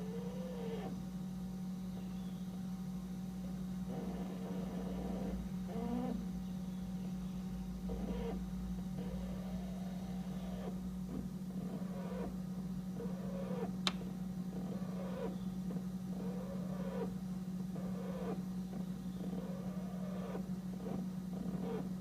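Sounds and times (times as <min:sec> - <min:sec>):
refrigerator humming: 0:00.0 - 0:22.0
sharp click: 0:13.8 - 0:14.0.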